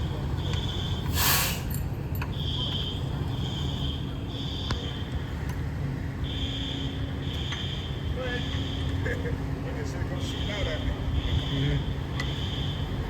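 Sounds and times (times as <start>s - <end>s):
fire alarm beeps: 0.4s - 1.2s, 2.3s - 5.2s, 6.3s - 9.0s, 10.3s - 13.0s.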